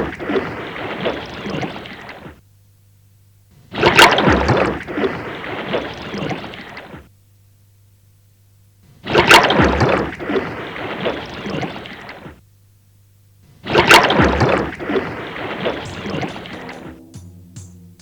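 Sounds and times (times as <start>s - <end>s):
water sloshing: 3.8s - 7.1s, 9.0s - 12.4s, 13.5s - 17.1s.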